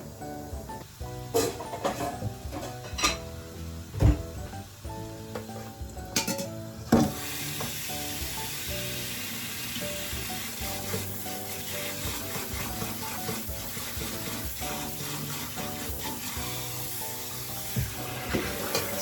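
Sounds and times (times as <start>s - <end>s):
background music: 0.0s - 19.0s
food sizzling in a pan: 0.0s - 19.0s.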